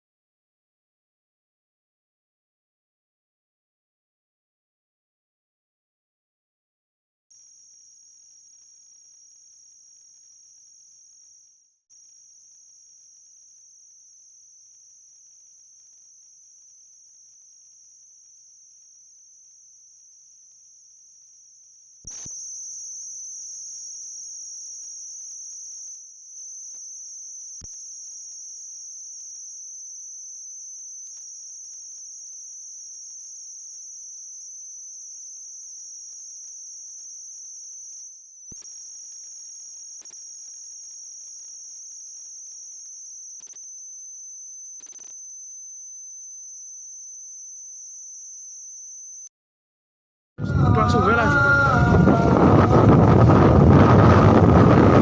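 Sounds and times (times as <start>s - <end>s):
insects droning: 7.4s - 49.3s.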